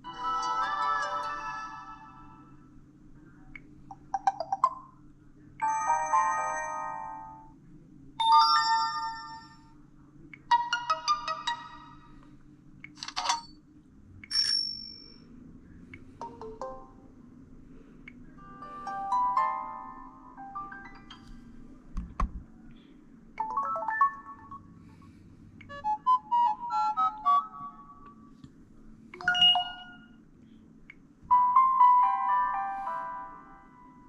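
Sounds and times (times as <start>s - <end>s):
phone notification chimes: 29.2s - 30.1s.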